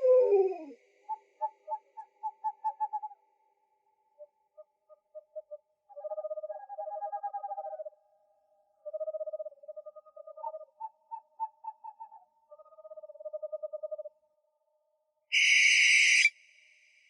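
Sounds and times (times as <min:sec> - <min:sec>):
owl hooting: 0:00.0 - 0:03.2.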